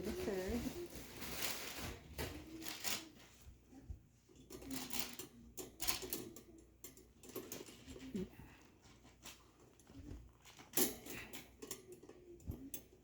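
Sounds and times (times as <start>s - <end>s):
metal wire rails clinking: 4.4s - 8.1s, 10.6s - 13.0s.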